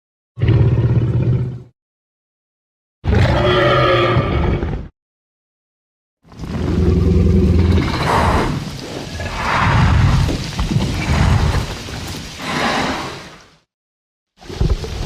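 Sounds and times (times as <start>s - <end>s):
deep dinosaur roar: 6.4s - 11.8s.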